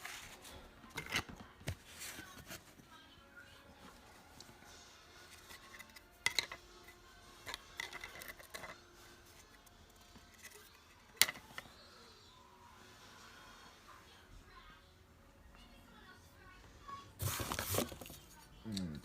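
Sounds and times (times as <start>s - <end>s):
packaging rustling: 17.2s - 18.2s.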